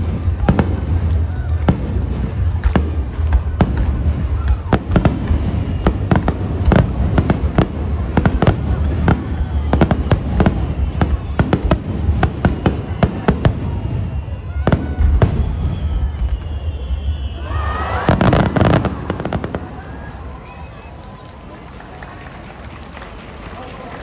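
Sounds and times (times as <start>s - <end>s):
low rumble of booms: 0.0s - 17.4s
fireworks bangs: 0.0s - 22.2s.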